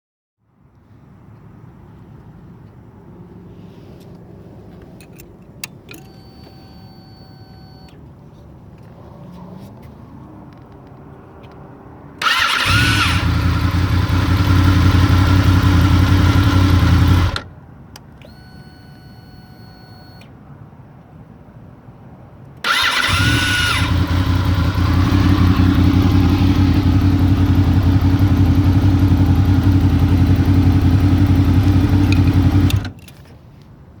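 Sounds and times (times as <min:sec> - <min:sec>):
motorcycle engine running: 0:12.3 - 0:17.5, 0:22.8 - 0:32.9
whistle on engine start: 0:22.7 - 0:23.9.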